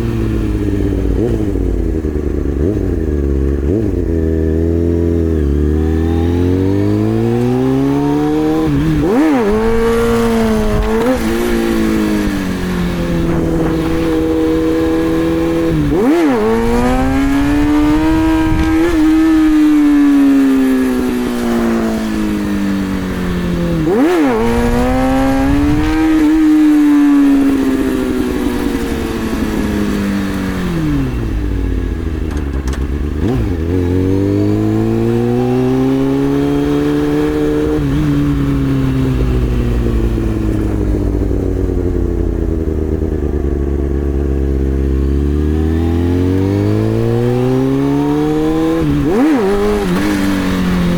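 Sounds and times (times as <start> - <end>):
motorcycle engine revving: 0.0 - 50.9
sharp throttle blips: 5.2 - 22.4.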